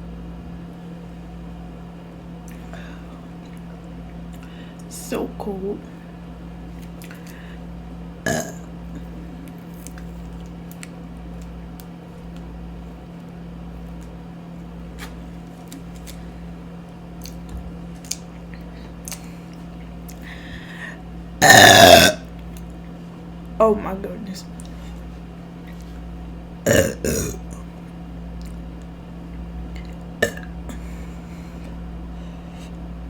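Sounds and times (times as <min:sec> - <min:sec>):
woman burping: 0:08.3 - 0:08.7, 0:21.4 - 0:22.3, 0:26.7 - 0:27.5, 0:30.2 - 0:30.6.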